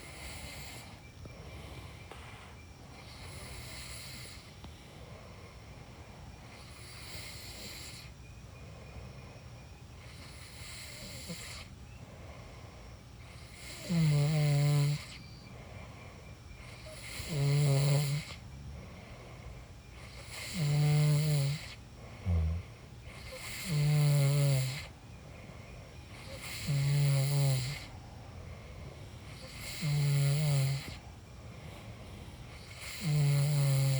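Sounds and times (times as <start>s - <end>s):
night insects hissing: 0.0s - 33.9s
snort: 2.1s - 4.6s, 6.4s - 8.2s, 10.0s - 11.7s, 13.2s - 15.5s, 16.6s - 25.0s, 26.1s - 28.0s, 28.6s - 31.0s, 31.8s - 33.9s
person snoring: 13.4s - 15.2s, 16.8s - 18.4s, 20.1s - 24.9s, 26.2s - 27.9s, 29.3s - 31.0s, 32.6s - 33.9s.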